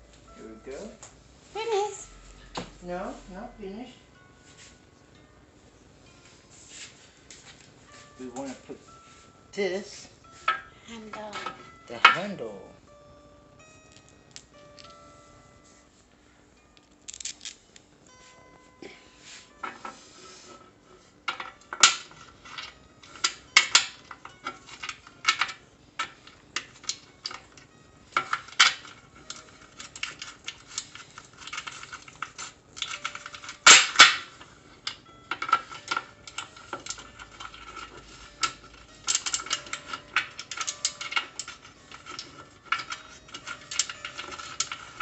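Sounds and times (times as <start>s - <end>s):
metal cookware clanking: 11.3s - 12.5s, 28.2s - 45.0s.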